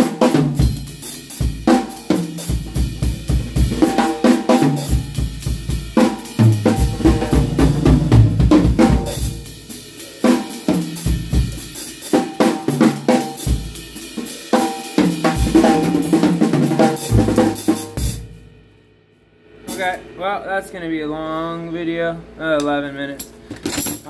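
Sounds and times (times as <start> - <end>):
drum kit groove: 0.0 - 18.7, 19.4 - 22.0.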